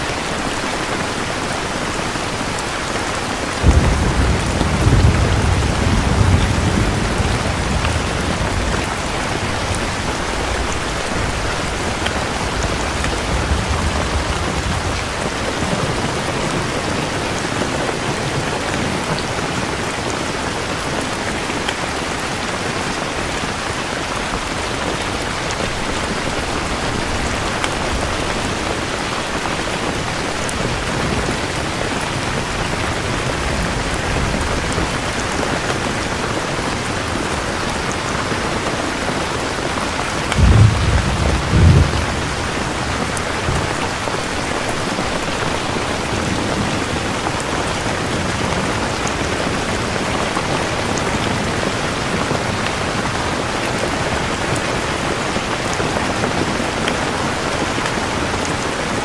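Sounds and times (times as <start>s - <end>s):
steady rain falling: 0.0s - 59.0s
low thunder rumble: 3.4s - 17.6s, 25.2s - 37.4s, 39.7s - 52.5s.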